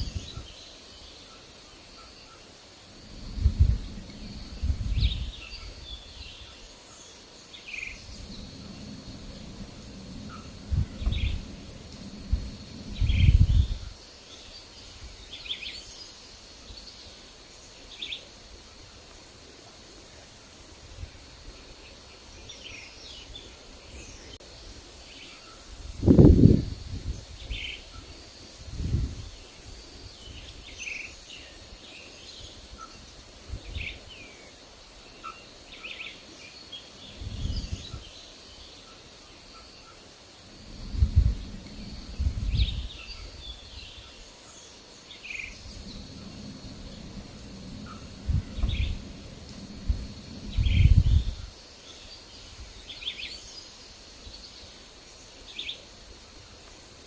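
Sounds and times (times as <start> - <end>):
birds chirping: 0.0 - 17.2, 35.2 - 54.8
low gusts of wind: 0.0 - 57.0.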